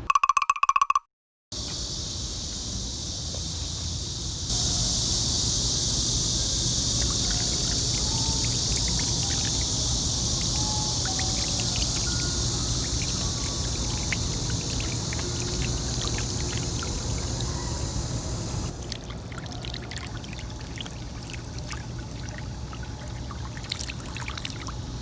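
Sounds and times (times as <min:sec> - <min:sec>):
high hiss: 0:01.6 - 0:18.8
rushing water: 0:06.9 - 0:24.8.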